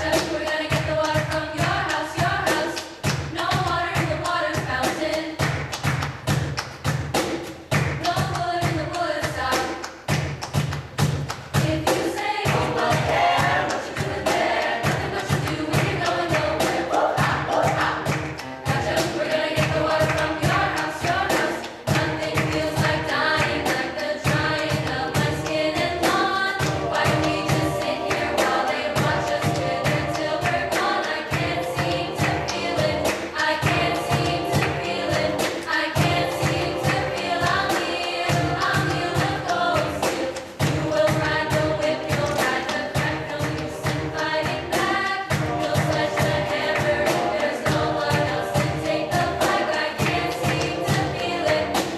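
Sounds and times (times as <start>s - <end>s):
choir singing: 0.0s - 5.6s, 8.0s - 9.8s, 11.6s - 51.9s
low thumping beat: 12.5s - 40.0s, 45.3s - 51.9s.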